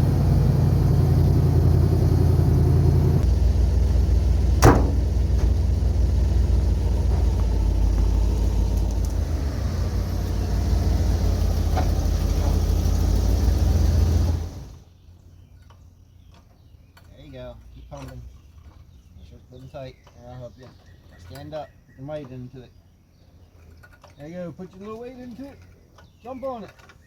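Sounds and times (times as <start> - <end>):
vehicle engine running: 0.0 - 14.8.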